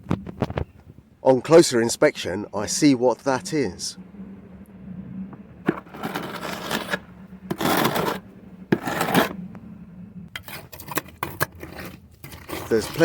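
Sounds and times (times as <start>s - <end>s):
hand tool scraping soil: 5.7s - 9.4s, 10.4s - 13.0s.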